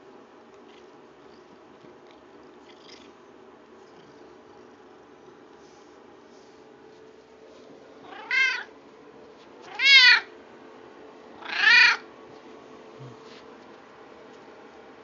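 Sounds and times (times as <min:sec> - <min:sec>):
cat meowing: 0:08.0 - 0:08.7, 0:09.7 - 0:10.3, 0:11.4 - 0:12.0.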